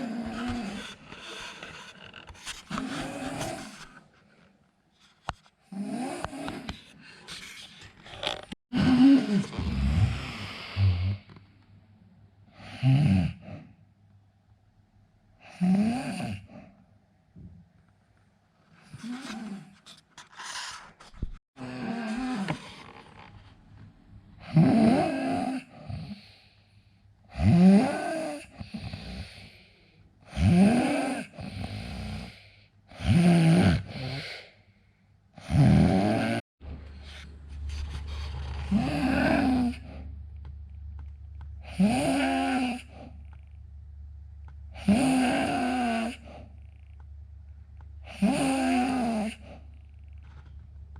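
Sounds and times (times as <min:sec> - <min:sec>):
man snoring heavily: 0:05.7 - 0:06.7, 0:08.8 - 0:11.3, 0:12.5 - 0:13.6, 0:15.5 - 0:16.6, 0:24.4 - 0:26.4, 0:27.3 - 0:29.6, 0:30.3 - 0:34.4, 0:35.4 - 0:36.4, 0:38.7 - 0:40.1, 0:41.6 - 0:43.0, 0:44.8 - 0:46.3, 0:48.1 - 0:49.4.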